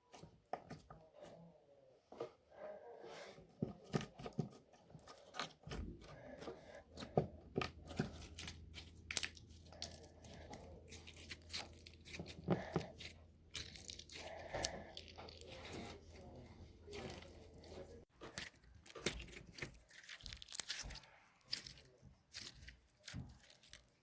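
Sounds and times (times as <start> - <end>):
slime crackling and popping: 7.8 - 16.3, 16.9 - 24.0.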